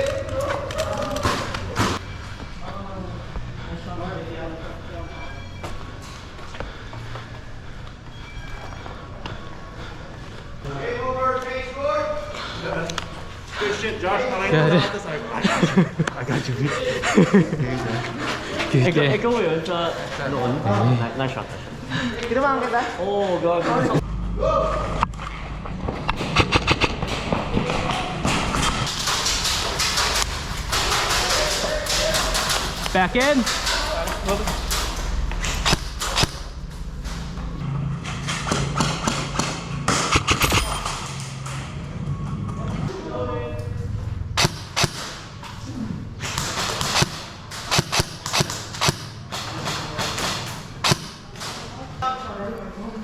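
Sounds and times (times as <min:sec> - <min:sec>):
sharp clicks: 0:28.5 - 0:37.2, 0:44.4 - 0:45.2
airsoft gun shots: 0:44.4 - 0:45.3, 0:46.2 - 0:51.2.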